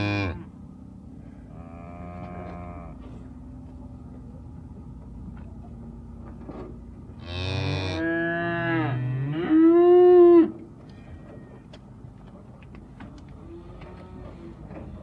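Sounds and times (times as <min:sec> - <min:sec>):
cattle mooing: 0:00.0 - 0:00.5, 0:01.5 - 0:03.1, 0:07.2 - 0:10.6.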